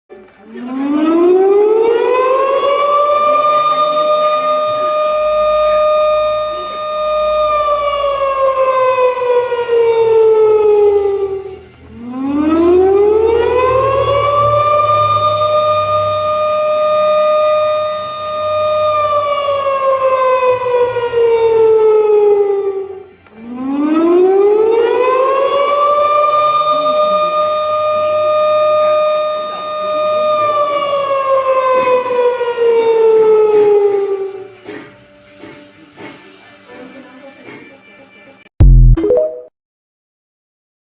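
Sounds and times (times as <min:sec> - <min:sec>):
warning siren wailing: 0:00.5 - 0:34.5
warning siren winding: 0:12.3 - 0:19.1.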